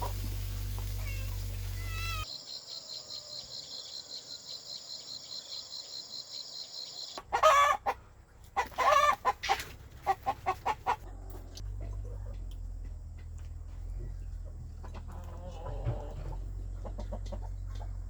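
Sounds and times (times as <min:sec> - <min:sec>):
loud animal calls: 0:00.0 - 0:02.3.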